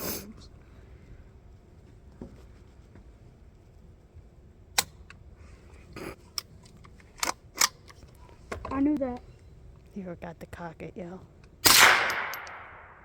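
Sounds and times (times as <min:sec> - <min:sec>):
rifle action clicking: 0:11.7 - 0:12.7.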